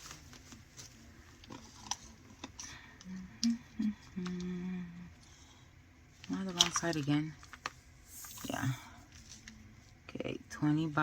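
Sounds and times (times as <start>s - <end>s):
person humming: 3.0s - 5.1s.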